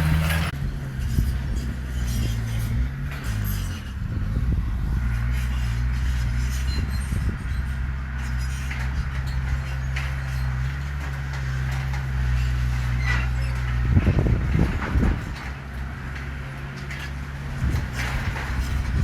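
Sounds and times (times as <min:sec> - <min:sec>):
metallic clanks: 0:00.0 - 0:00.6
heavy diesel engine running: 0:00.0 - 0:19.0.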